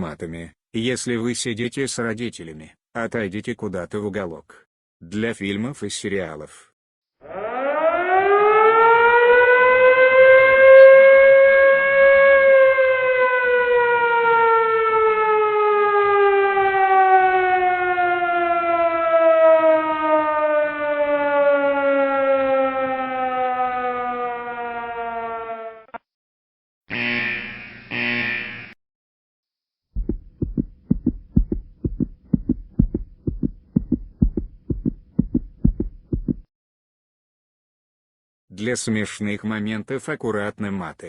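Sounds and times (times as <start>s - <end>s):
air-raid siren wailing: 7.2s - 25.9s.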